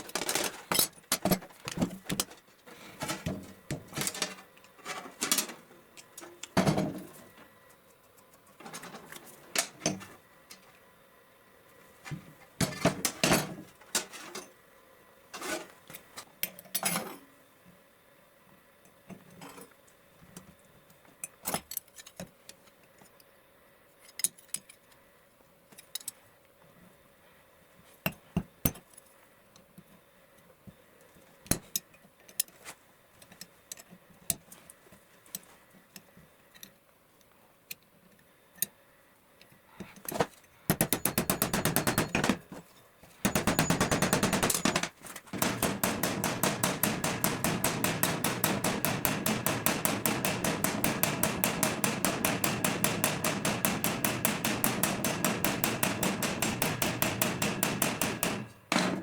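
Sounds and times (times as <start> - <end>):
rapid hammer taps on metal: 40.7 - 42.5, 43.3 - 59.0.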